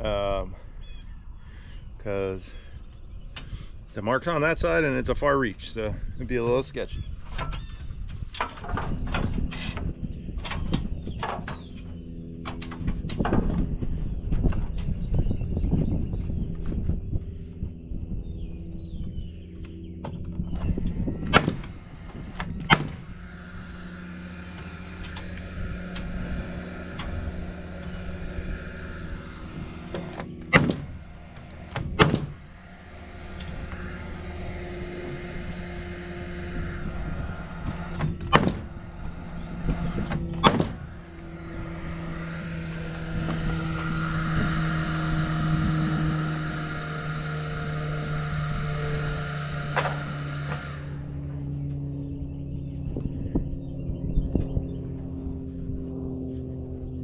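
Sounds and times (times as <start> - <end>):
steady low hum: 0.0 - 57.0
sharp wooden knocks: 38.0 - 38.7.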